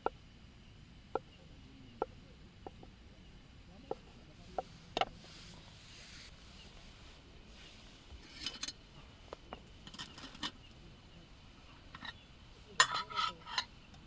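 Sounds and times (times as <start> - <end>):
metallic clatter and ring: 8.2 - 8.8
cookware clinking and knocking: 12.8 - 13.7.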